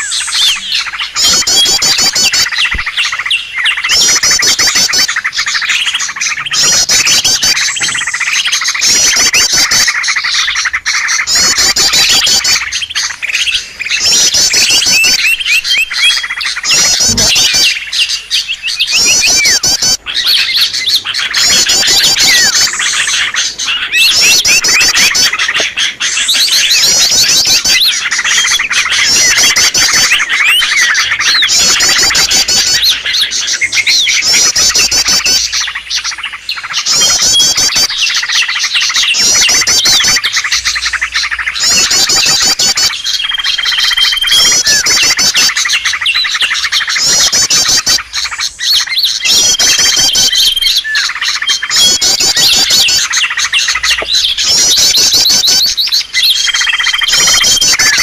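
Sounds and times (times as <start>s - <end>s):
rapid high bird trills: 0.0s - 58.0s
songbirds chirping: 0.0s - 58.0s.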